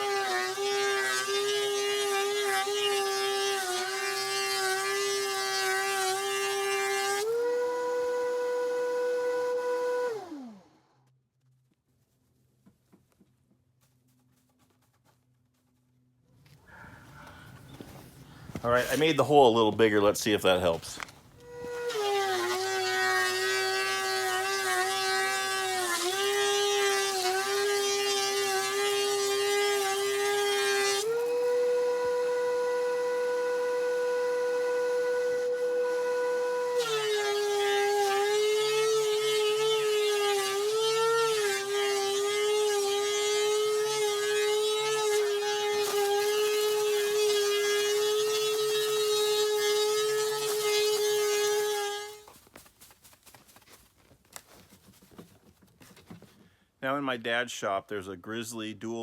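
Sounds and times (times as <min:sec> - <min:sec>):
hiss of wood cutting: 0:00.0 - 0:10.8, 0:20.4 - 0:52.3
thickness planer motor whine: 0:00.0 - 0:11.0, 0:21.0 - 0:52.3.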